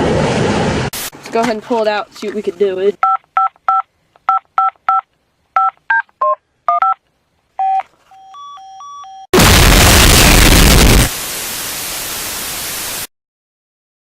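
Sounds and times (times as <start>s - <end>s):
phone keypad beeps: 3.0s - 7.0s, 7.6s - 9.3s
loud blast of static: 9.4s - 13.1s.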